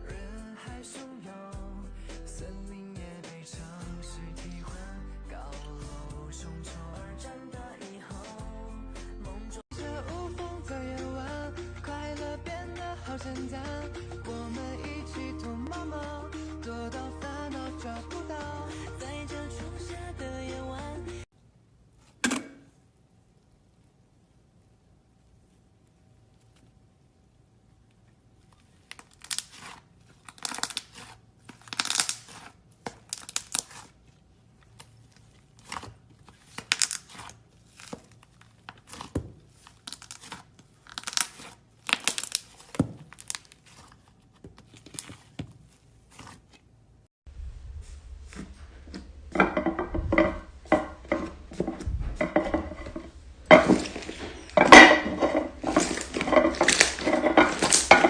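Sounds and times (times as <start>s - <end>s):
slime crackling and popping: 28.4s - 46.4s, 55.6s - 58.0s.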